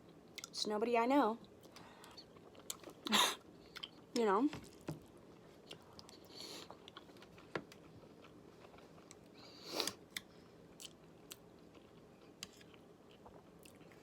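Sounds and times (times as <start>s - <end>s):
person chewing: 1.6s - 3.1s, 3.7s - 4.0s, 5.6s - 14.0s.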